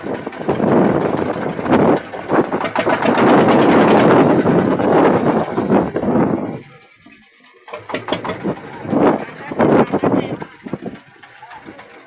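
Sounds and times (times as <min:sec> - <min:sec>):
small engine running: 0:00.0 - 0:12.0.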